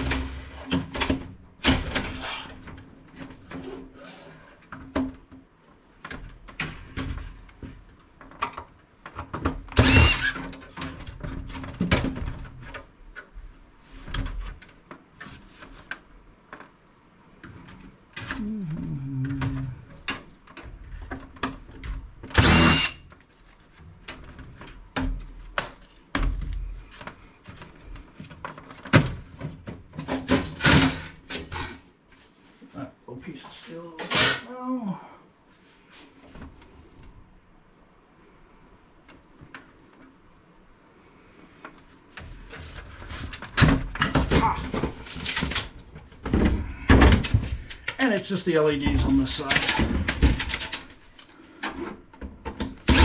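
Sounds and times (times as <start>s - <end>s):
computer case panels clattering: 0.0s - 4.0s, 43.4s - 51.1s.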